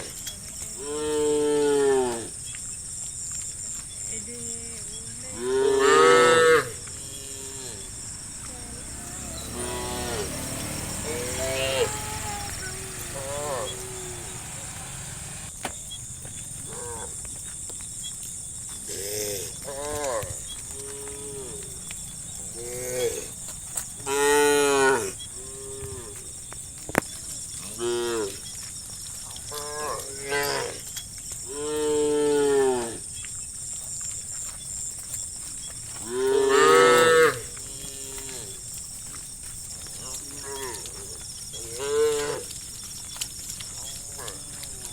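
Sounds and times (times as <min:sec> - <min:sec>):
cows mooing: 0:05.5 - 0:15.5, 0:19.7 - 0:26.2, 0:36.0 - 0:38.6, 0:40.0 - 0:42.5.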